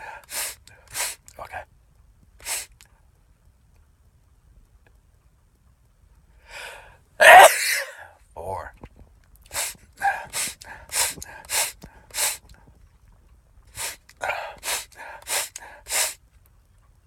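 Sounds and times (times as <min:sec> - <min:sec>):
man gasping breaths: 0:00.0 - 0:01.3, 0:06.4 - 0:08.1, 0:09.5 - 0:12.6, 0:13.7 - 0:16.2
man sneezing: 0:07.2 - 0:08.1.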